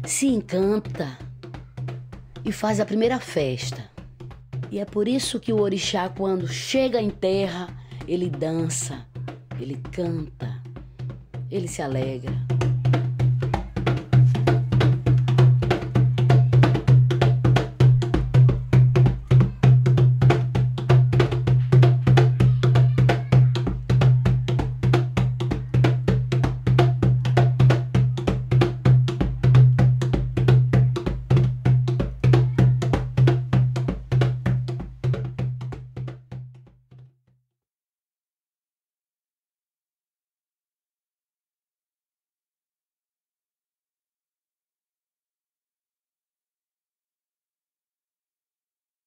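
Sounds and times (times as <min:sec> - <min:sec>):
fast drum percussion music: 0:00.0 - 0:36.8.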